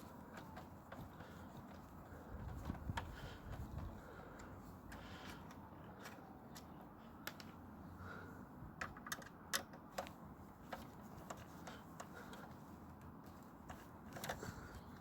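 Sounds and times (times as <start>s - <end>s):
plastic and metal parts clicking: 4.4s - 7.6s, 8.8s - 15.0s.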